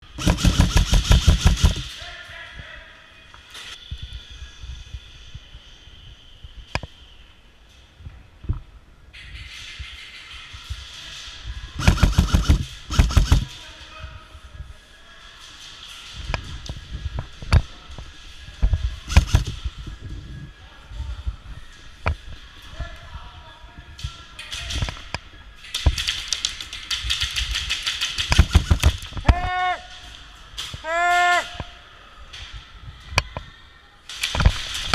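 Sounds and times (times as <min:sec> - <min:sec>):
rapid airsoft gunfire: 0:00.0 - 0:01.9, 0:11.8 - 0:13.6, 0:19.1 - 0:19.6, 0:26.9 - 0:29.1
sharp clicks: 0:00.1 - 0:01.9, 0:11.8 - 0:13.5, 0:19.1 - 0:19.6.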